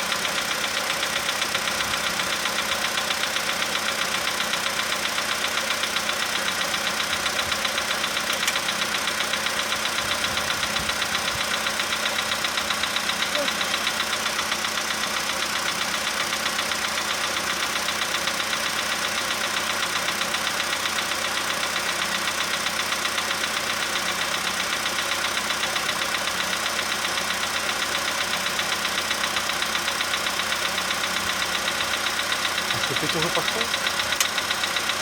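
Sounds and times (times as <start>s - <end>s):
car engine idling with knock: 0.0s - 35.0s.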